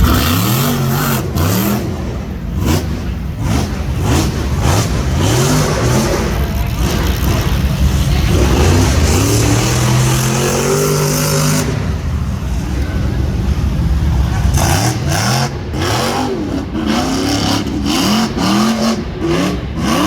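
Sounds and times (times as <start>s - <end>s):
buggy engine revving: 0.0s - 20.0s.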